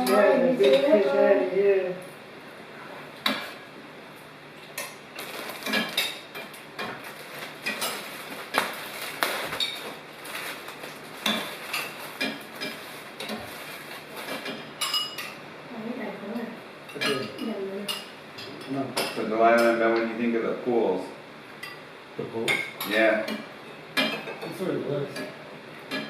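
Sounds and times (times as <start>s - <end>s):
utensils clinking on plates: 4.6s - 15.4s, 16.8s - 20.1s, 22.5s - 26.0s.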